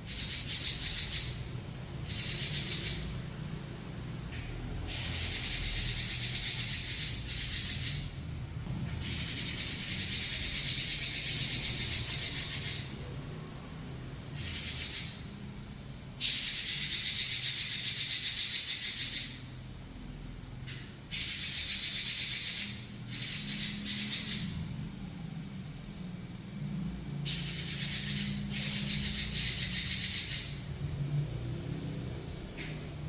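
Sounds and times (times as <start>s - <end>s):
bird singing rolling trills: 0.0s - 3.5s, 4.6s - 8.4s, 9.0s - 13.2s, 14.3s - 15.6s, 16.2s - 19.6s, 21.1s - 26.1s, 27.0s - 30.9s.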